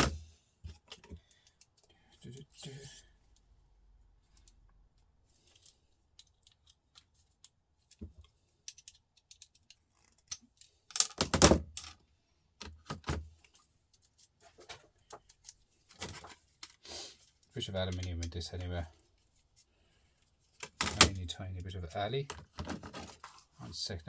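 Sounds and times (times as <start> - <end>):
clatter of parts: 5.3 - 12.0, 12.6 - 18.4, 20.4 - 21.3, 22.2 - 23.6
small laptop parts clicking: 5.5 - 12.0.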